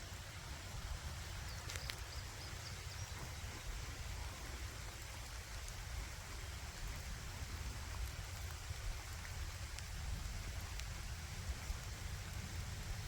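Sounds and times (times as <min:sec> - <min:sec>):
light rain hissing: 0:00.0 - 0:13.0
faint ticks: 0:01.6 - 0:02.2.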